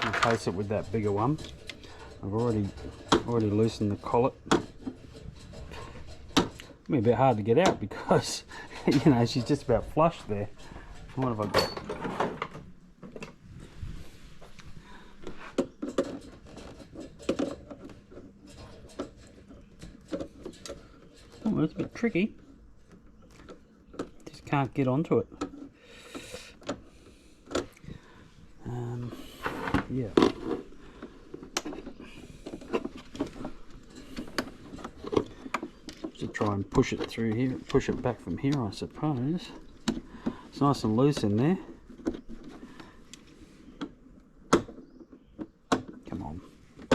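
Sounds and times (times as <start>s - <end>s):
tools and metal parts clicking: 0.0s - 13.3s, 15.6s - 25.7s, 29.9s - 43.3s.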